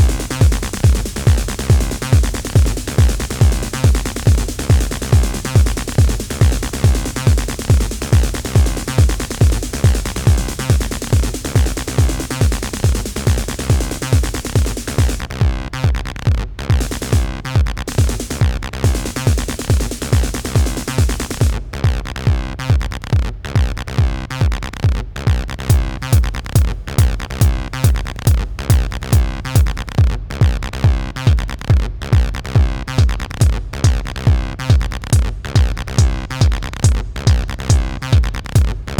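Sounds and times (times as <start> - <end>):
repeating synth bassline: 0.0 - 22.9, 25.2 - 38.9
four-on-the-floor kick drum: 0.0 - 38.9
hi-hat ticks: 32.9 - 38.9.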